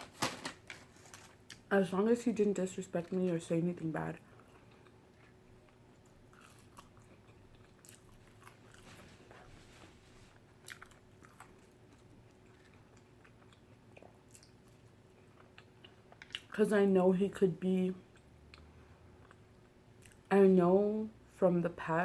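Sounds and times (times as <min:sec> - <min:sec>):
person chewing and biting: 0:04.4 - 0:09.1, 0:10.6 - 0:16.5
small crunches: 0:05.7 - 0:13.6.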